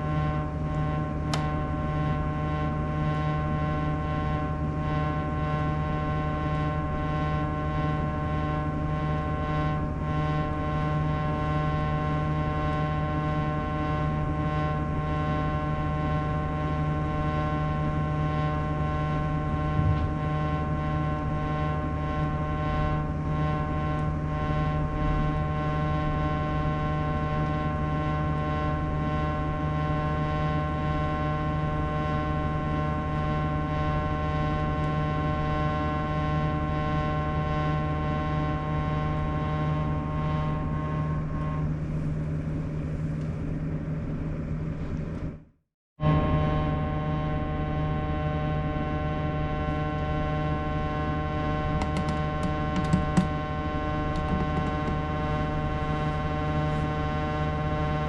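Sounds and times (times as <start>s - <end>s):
air conditioner humming: 51.4s - 56.8s.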